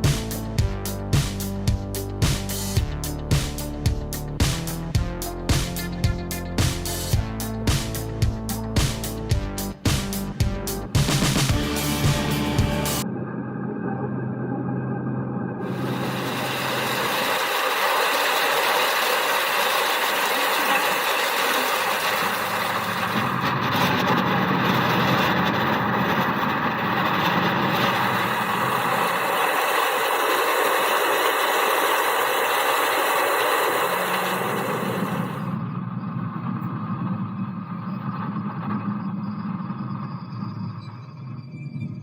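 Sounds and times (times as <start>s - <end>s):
low hum: 0.0s - 42.0s
heavy machinery engine running: 4.7s - 13.0s, 15.6s - 35.7s.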